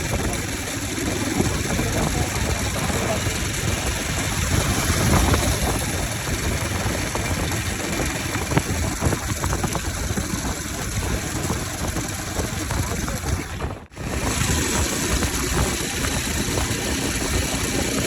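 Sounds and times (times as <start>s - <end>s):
engine pops: 0.0s - 18.0s
motorcycle engine idling unevenly: 0.0s - 18.0s.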